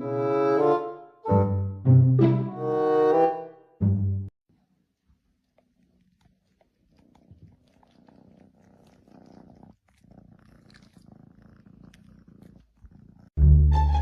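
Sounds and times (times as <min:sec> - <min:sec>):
cat purring: 0:04.5 - 0:13.4.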